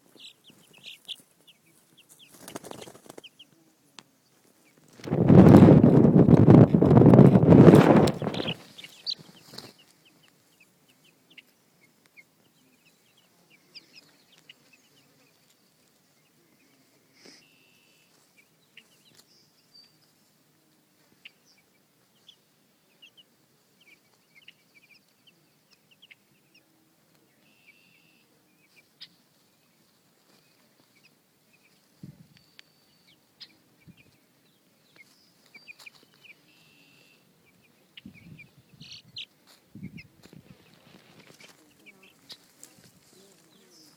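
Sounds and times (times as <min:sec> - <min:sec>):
chicks peeping: 0:00.0 - 0:43.9.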